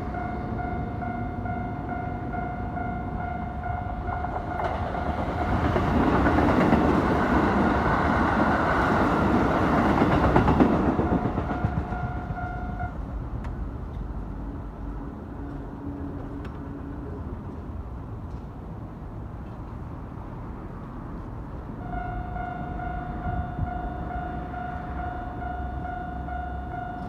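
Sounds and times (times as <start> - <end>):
level-crossing warning bell: 0.0 - 5.8, 10.1 - 13.0, 21.8 - 27.0
train rumbling past: 0.0 - 27.0.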